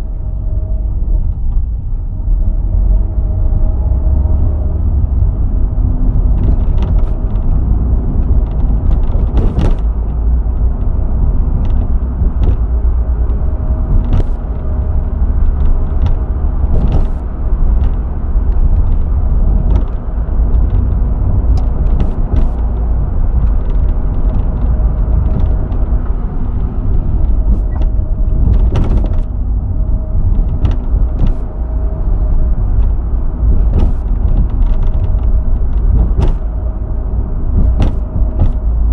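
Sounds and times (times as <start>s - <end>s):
car road and engine rumble: 0.0s - 38.9s
knocks and clunks from rear: 8.2s - 10.3s, 11.5s - 29.4s, 30.2s - 31.6s, 33.4s - 36.8s, 37.4s - 38.9s.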